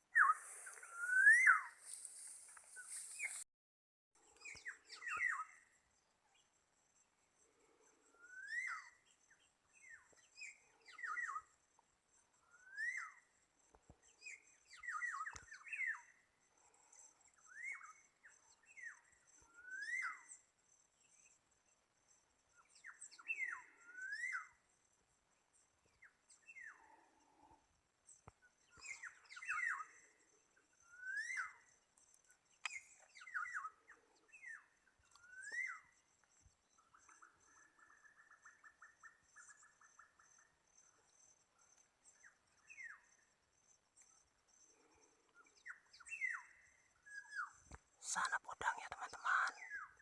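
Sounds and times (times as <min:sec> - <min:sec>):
birds whistling calls: 0:00.0 - 0:02.0.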